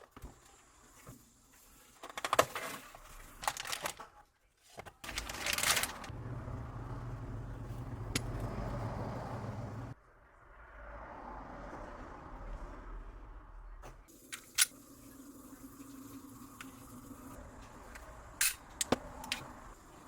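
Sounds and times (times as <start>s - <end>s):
plastic and metal parts rattling: 2.0s - 6.1s.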